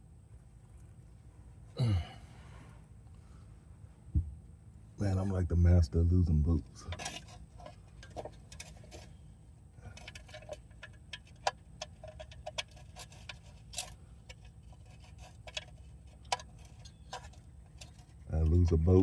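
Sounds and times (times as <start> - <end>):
faint low hum: 0.0 - 19.0
hand tools and bolts clinking: 6.6 - 9.2.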